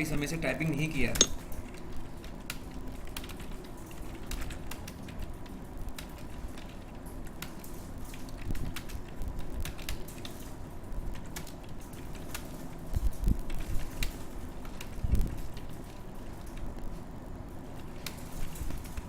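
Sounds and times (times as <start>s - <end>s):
computer keyboard typing: 1.7s - 10.5s.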